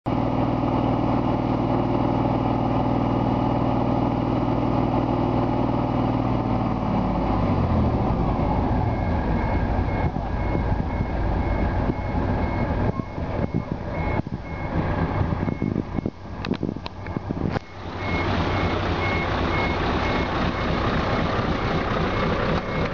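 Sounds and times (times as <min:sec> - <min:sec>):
diesel truck engine running: 0:00.1 - 0:22.9
reversing alarm beeping: 0:07.0 - 0:22.9.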